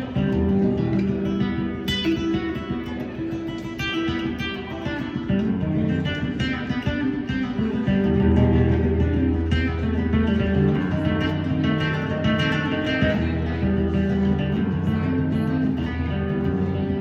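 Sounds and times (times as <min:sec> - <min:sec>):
guitar plucking and strumming: 0:00.0 - 0:17.0
sustained bass notes: 0:07.6 - 0:17.0.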